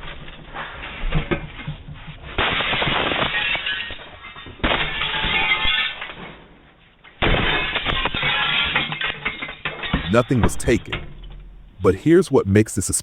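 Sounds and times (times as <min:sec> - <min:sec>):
loud smashing crashes: 0:02.4 - 0:06.3, 0:07.2 - 0:11.9.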